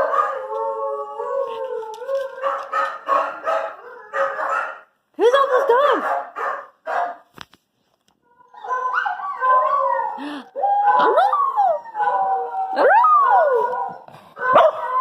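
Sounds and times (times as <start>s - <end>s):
dogs howling: 0.0s - 4.8s, 8.3s - 15.0s.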